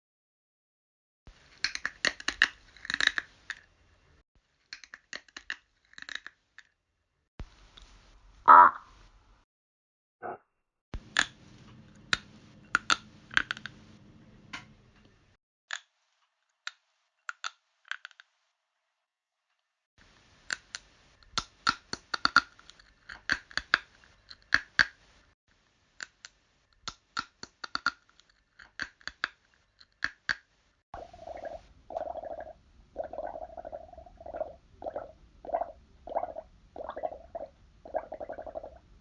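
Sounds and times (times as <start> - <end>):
faint hum: 11.0 - 15.3.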